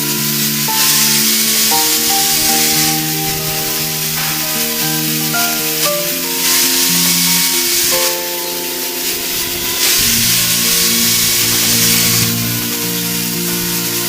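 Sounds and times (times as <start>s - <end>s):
background music of sustained chords: 0.0s - 14.0s
steady high hiss: 0.0s - 14.0s.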